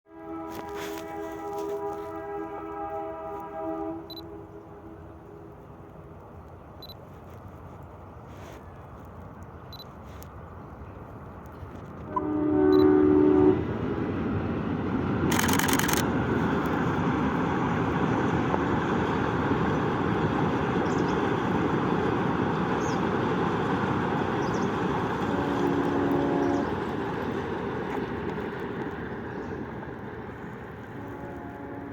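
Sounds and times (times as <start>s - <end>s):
locomotive two-tone horn: 0.1s - 5.5s, 12.0s - 14.0s, 25.2s - 26.9s, 30.9s - 31.9s
train rumbling past: 0.1s - 31.9s.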